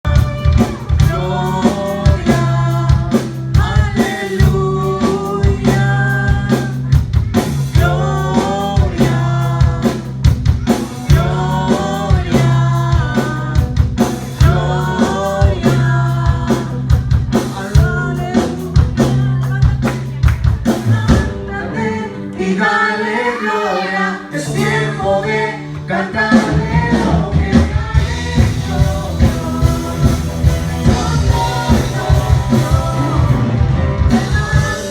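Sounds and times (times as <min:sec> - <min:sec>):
live band playing: 0:00.0 - 0:22.9, 0:23.7 - 0:34.9
woman singing worship song: 0:00.8 - 0:34.9.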